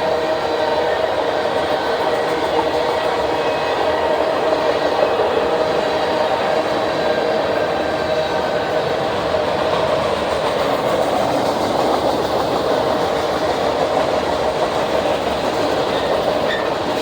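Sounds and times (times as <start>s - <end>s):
freight train rolling on rails: 0.0s - 17.0s.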